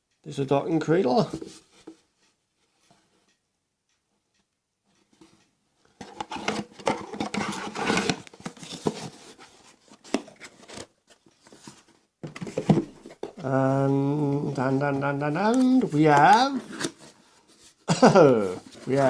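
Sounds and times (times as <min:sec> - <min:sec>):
packaging rustling and crinkling: 0:06.0 - 0:13.4.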